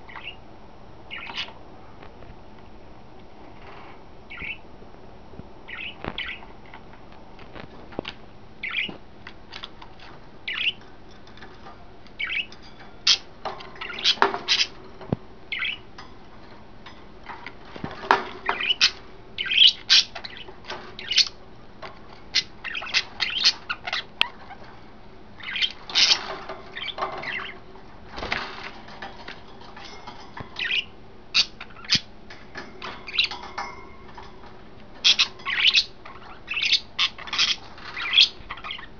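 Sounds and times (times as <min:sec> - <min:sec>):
budgerigars chirping: 0:00.1 - 0:00.4, 0:01.1 - 0:01.6, 0:04.3 - 0:04.6, 0:05.7 - 0:06.5, 0:08.6 - 0:09.0, 0:10.5 - 0:10.8, 0:12.2 - 0:14.8, 0:15.5 - 0:15.9, 0:18.3 - 0:21.4, 0:22.2 - 0:24.7, 0:25.4 - 0:27.6, 0:30.6 - 0:33.7, 0:35.0 - 0:38.9.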